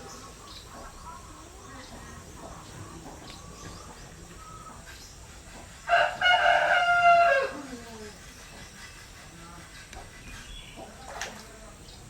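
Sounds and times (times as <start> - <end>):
faint bird calls: 0.0 - 5.7
rooster crowing: 5.9 - 7.7.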